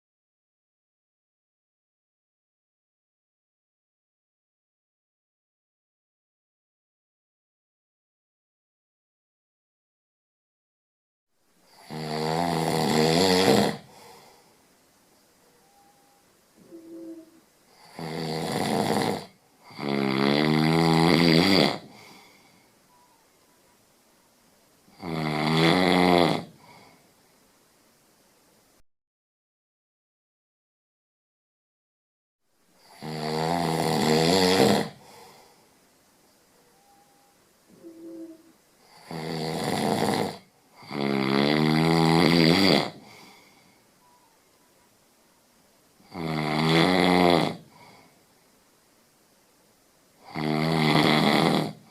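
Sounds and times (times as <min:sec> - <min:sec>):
loud snoring: 0:11.7 - 0:14.3, 0:16.8 - 0:22.6, 0:24.9 - 0:27.0, 0:32.8 - 0:35.4, 0:37.9 - 0:43.6, 0:46.0 - 0:48.0, 0:50.2 - 0:51.9.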